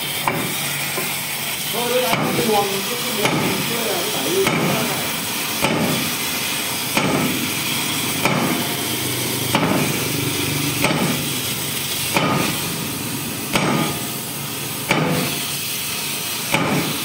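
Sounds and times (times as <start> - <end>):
hammer striking metal: 0.2 - 1.1, 2.0 - 2.6, 3.2 - 3.7, 4.4 - 4.8, 5.6 - 6.1, 6.9 - 8.8, 9.4 - 10.1, 10.7 - 11.4, 12.0 - 12.8, 13.4 - 15.6, 16.5 - 17.0.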